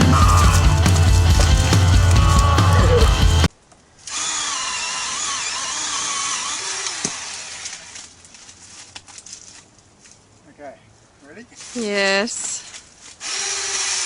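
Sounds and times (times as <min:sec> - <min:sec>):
chainsaw cutting wood: 0:00.0 - 0:08.1, 0:13.2 - 0:14.0.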